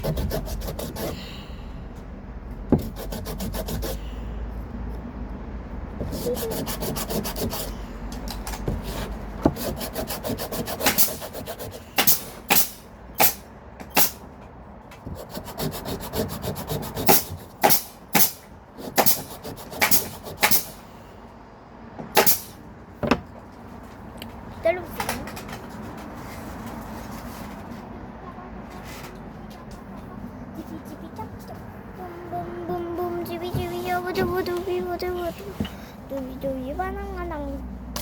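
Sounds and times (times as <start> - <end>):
wood sanding by hand: 0.0 - 1.3, 2.7 - 4.1, 6.0 - 7.8, 8.7 - 13.4, 15.1 - 20.8.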